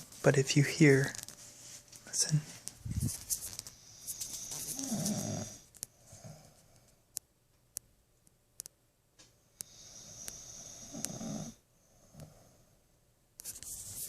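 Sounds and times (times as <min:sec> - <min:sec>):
woman snoring lightly: 0:04.4 - 0:06.4, 0:09.6 - 0:12.6
faint sharp clicks: 0:06.8 - 0:10.4.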